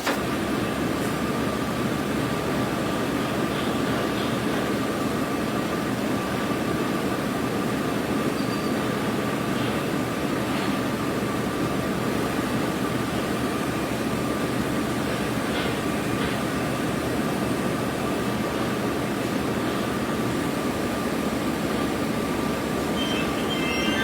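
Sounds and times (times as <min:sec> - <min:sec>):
machinery high hum: 0:05.0 - 0:24.0
music: 0:23.0 - 0:24.0.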